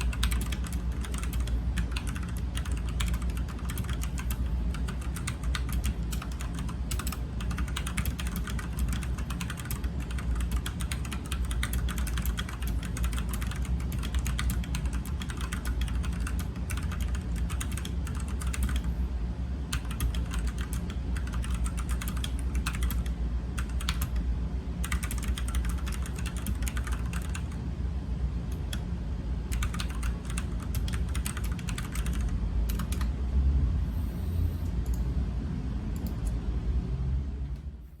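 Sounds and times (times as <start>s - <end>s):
mechanical keyboard typing: 0.0s - 18.9s, 19.7s - 24.2s, 24.8s - 27.6s, 29.5s - 33.1s.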